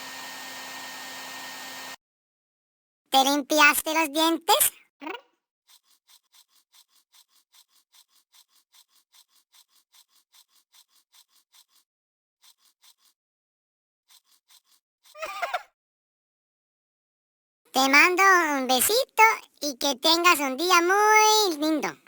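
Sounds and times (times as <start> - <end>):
cat licking fur: 5.7 - 13.2, 14.1 - 14.8.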